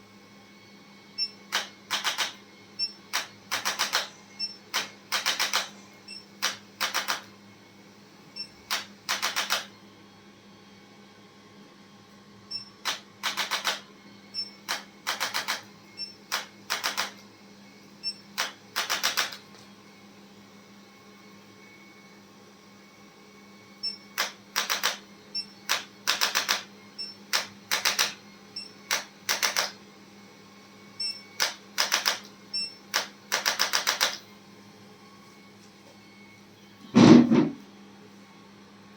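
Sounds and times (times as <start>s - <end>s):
rapid mechanical clicking: 1.5s - 2.4s, 3.1s - 4.1s, 4.7s - 5.7s, 6.4s - 7.3s, 8.7s - 9.7s, 12.9s - 13.8s, 14.7s - 15.6s, 16.3s - 17.2s, 18.4s - 19.4s, 24.2s - 25.0s, 25.7s - 26.6s, 27.3s - 28.2s, 28.9s - 29.8s, 31.4s - 32.3s, 32.9s - 34.2s.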